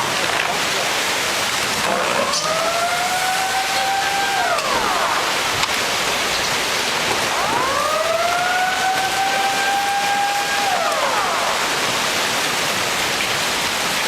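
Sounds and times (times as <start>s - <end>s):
rush of water or rain: 0.0s - 14.0s
wailing siren: 1.8s - 6.0s, 7.1s - 12.4s.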